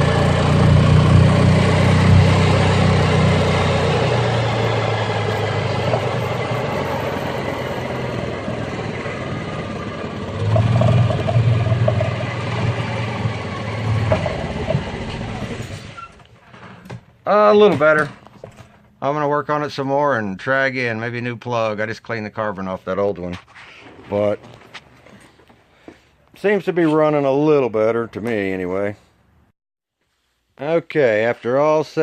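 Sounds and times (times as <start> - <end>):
golf cart engine running: 0.0 - 16.3.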